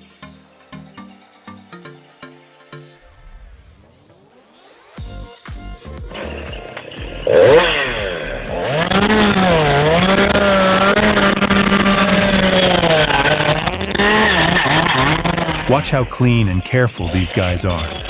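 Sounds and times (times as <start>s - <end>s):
chainsaw engine revving: 6.1s - 16.0s.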